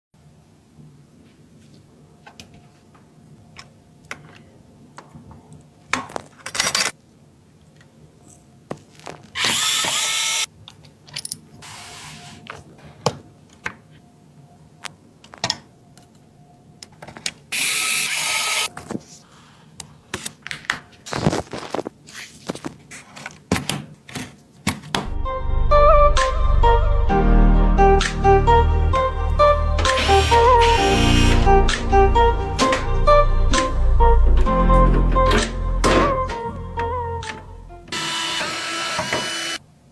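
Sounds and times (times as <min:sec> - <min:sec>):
electric screwdriver running: 0:09.4 - 0:10.5, 0:17.6 - 0:18.7, 0:28.9 - 0:33.9, 0:37.9 - 0:39.6.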